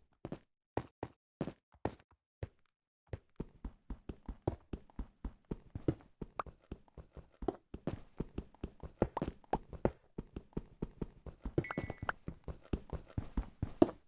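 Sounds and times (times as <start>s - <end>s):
short high beep: 11.6s - 12.1s.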